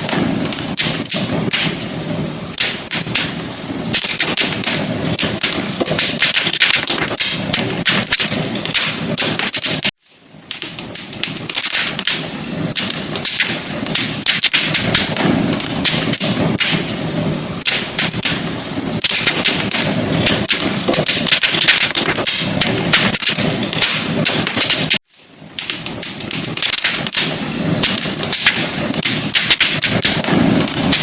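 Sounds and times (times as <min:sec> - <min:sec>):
wood fire crackling: 0:00.0 - 0:31.0.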